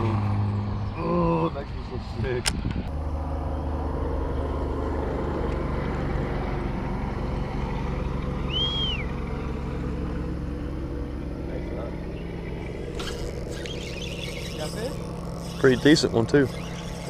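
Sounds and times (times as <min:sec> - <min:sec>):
boat motor humming: 0:02.8 - 0:17.0
short high chirp: 0:08.5 - 0:09.1.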